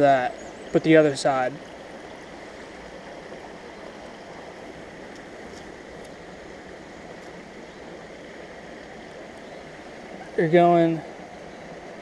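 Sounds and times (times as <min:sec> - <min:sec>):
stream flowing over rocks: 0:00.0 - 0:12.0.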